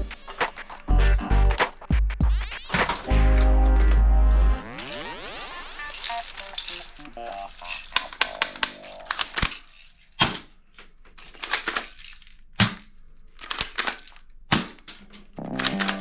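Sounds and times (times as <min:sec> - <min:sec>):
toy guns clicking: 0:07.6 - 0:10.5.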